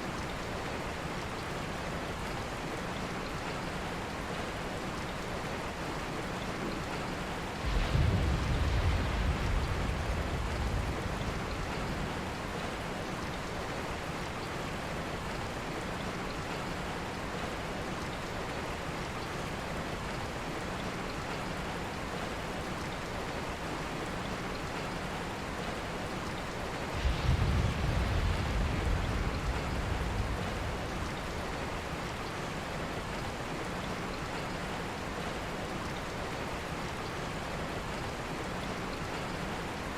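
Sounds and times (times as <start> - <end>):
steady rain: 0.0 - 39.9
thunder rumbling: 7.4 - 13.0, 26.6 - 32.7.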